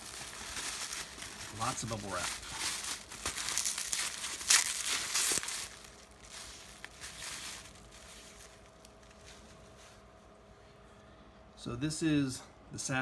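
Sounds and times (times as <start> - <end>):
bubble wrap crinkling: 0.0 - 10.1
soft rustling and handling: 0.0 - 11.1.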